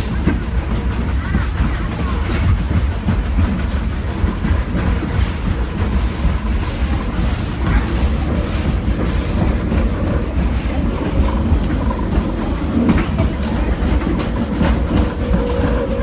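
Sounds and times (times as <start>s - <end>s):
train car rumble: 0.0s - 16.0s
wheels clicking over rails: 0.0s - 16.0s.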